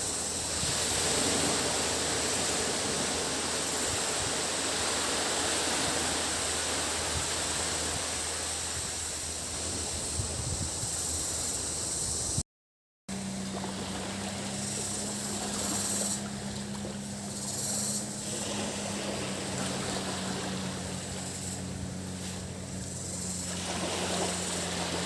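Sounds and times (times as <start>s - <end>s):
waves washing on beach: 0.0s - 11.0s, 13.1s - 25.0s
cicadas buzzing: 0.0s - 12.4s, 13.1s - 25.0s
low motor hum: 0.0s - 12.4s, 13.1s - 25.0s.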